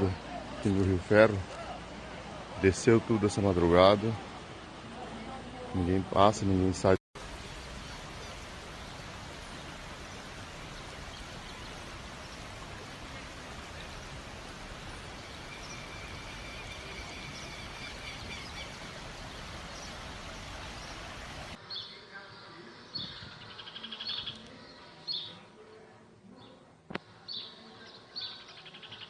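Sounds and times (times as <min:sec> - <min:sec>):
river rushing: 0:00.0 - 0:21.6.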